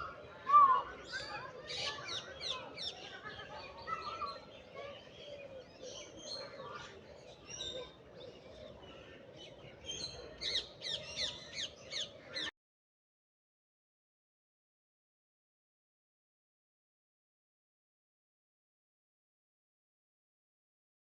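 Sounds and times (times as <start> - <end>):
small birds chirping: 0.7 - 12.5.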